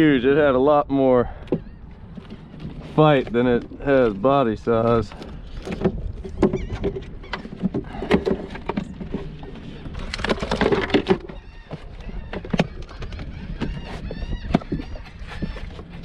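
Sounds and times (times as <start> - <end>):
knocks and rattles on plastic kayak: 1.4 - 16.0.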